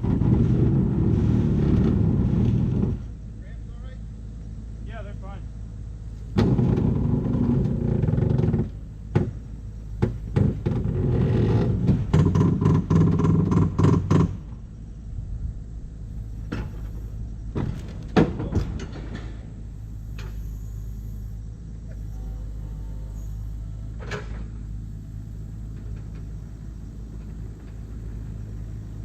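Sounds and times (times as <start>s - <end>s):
engine running: 0.0s - 29.0s
sharp knocks and clanks: 6.3s - 14.6s, 16.4s - 19.5s.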